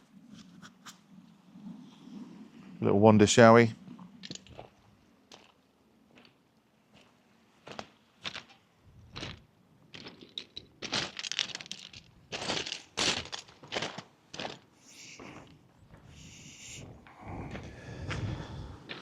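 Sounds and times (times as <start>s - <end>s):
footsteps crunching on stones: 10.0s - 16.1s.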